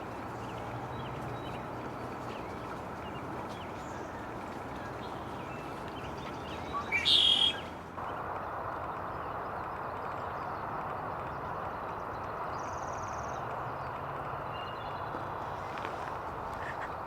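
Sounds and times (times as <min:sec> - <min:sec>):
rushing background noise: 0:00.0 - 0:17.0
high bird call: 0:04.9 - 0:07.8.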